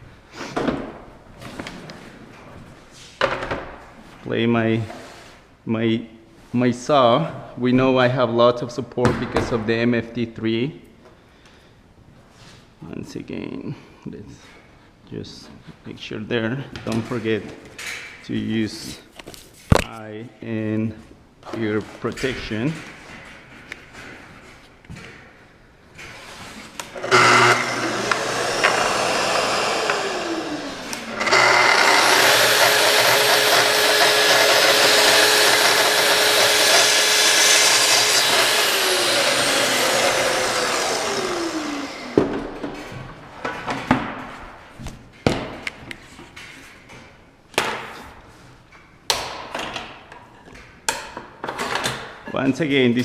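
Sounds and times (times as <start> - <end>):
track saw cutting: 26.9 - 42.3.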